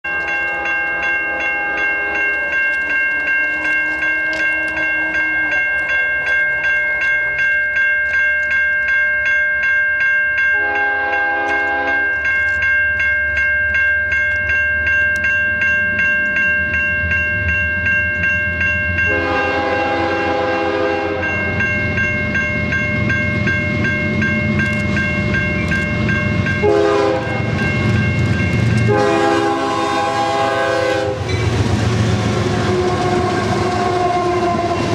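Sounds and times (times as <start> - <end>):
crossing signal bells ringing: 0.0 - 34.9
locomotive air horn blasts: 10.6 - 12.1, 19.1 - 21.4, 26.6 - 27.6, 28.8 - 31.3, 32.3 - 34.9
diesel locomotive engine noise: 10.6 - 34.9.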